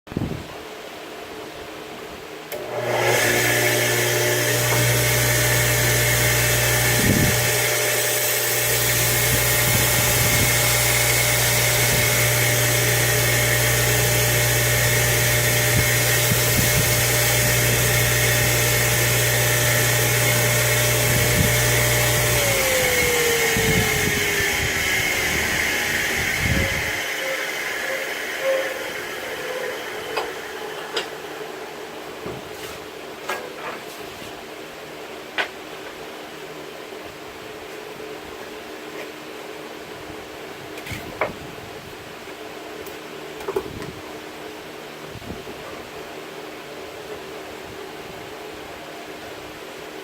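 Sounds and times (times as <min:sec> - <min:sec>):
belt grinder running: 0:02.5 - 0:32.2.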